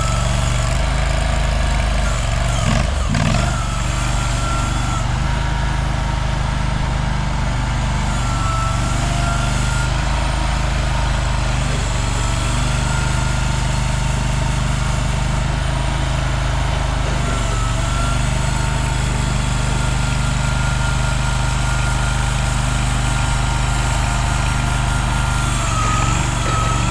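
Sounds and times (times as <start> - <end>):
excavator engine running: 0.0 - 26.9.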